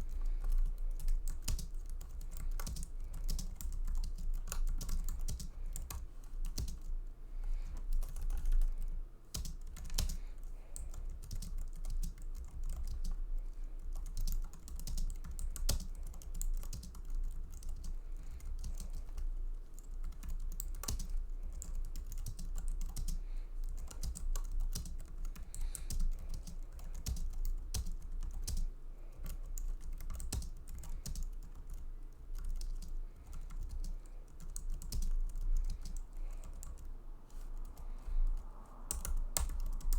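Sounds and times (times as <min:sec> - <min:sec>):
keyboard typing clicks: 0:00.1 - 0:06.9, 0:09.4 - 0:13.2, 0:13.9 - 0:17.9, 0:18.6 - 0:31.8, 0:38.9 - 0:39.9.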